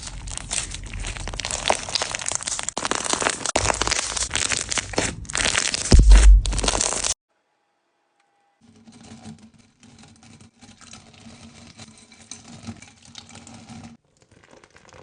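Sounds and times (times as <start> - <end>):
crunchy slime crackling and popping: 0.0 - 7.2
loud low thump: 5.9 - 6.8.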